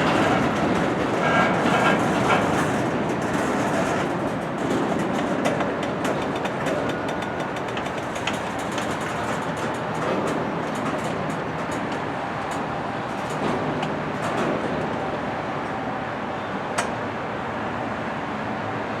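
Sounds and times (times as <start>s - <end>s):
train cars rumbling on rails: 0.0s - 19.0s.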